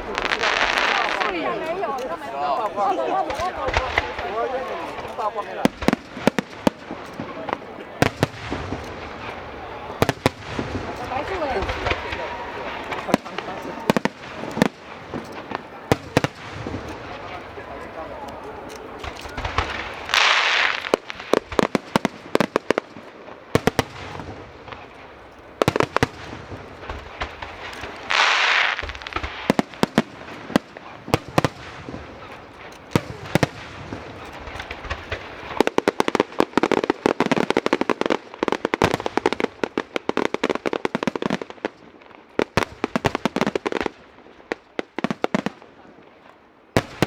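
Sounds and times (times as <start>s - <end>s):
fireworks hissing burst: 0.0s - 22.0s, 23.6s - 32.3s
fireworks bangs and crackling: 0.0s - 47.0s.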